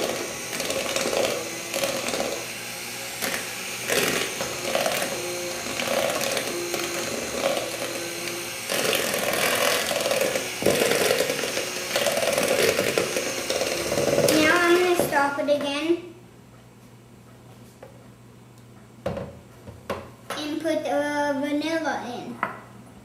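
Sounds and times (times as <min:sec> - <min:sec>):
electric mixer beating batter: 0:00.0 - 0:15.8.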